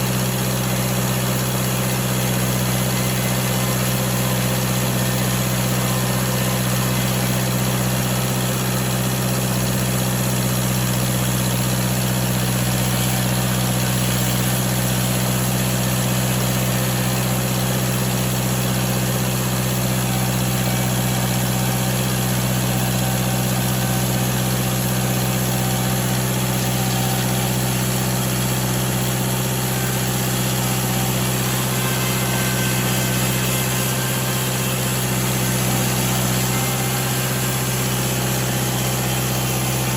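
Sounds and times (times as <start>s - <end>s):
sawmill engine humming: 0.0s - 39.9s.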